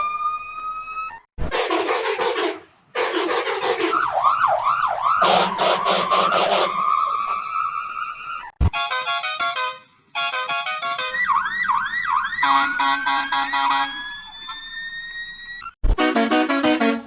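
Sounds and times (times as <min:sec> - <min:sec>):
siren-like wail: 0:00.0 - 0:01.3, 0:03.9 - 0:08.6, 0:10.6 - 0:15.8
bus horn notes: 0:08.6 - 0:11.4, 0:12.4 - 0:14.2.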